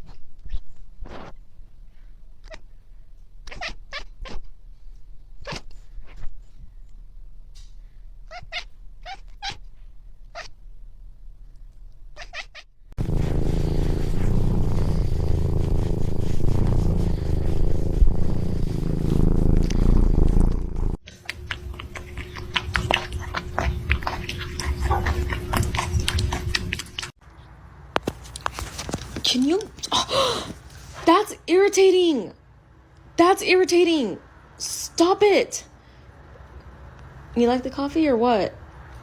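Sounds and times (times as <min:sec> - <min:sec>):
cat purring: 0:13.0 - 0:27.1.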